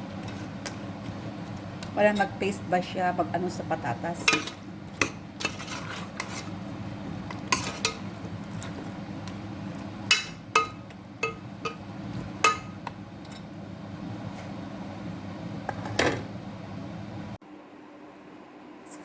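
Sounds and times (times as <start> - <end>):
stirring potatoes in pot: 0.0 - 2.4, 4.1 - 12.8
steady low hum: 0.0 - 19.0
utensil clinking against pot: 4.2 - 6.5, 7.4 - 8.8, 10.1 - 11.8, 12.4 - 13.4.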